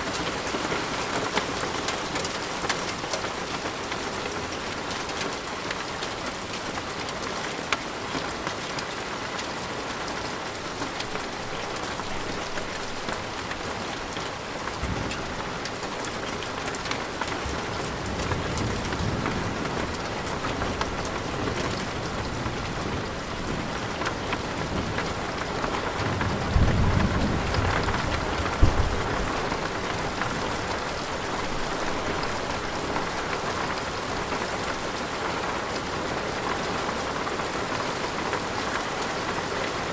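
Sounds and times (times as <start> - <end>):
rain pattering: 0.0 - 39.9
thunder rumbling: 24.6 - 33.6
sharp thunder crack: 26.6 - 29.4.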